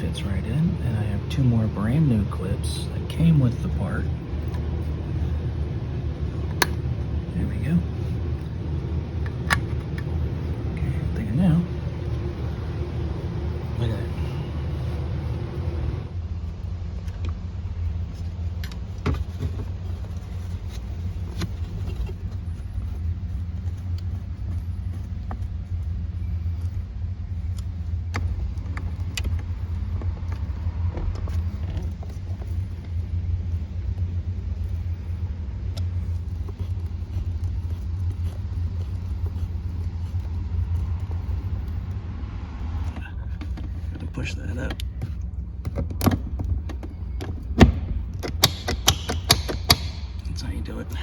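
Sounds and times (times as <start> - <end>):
steady low rumble: 0.0 - 51.0
plastic trim clicks: 47.6 - 50.3.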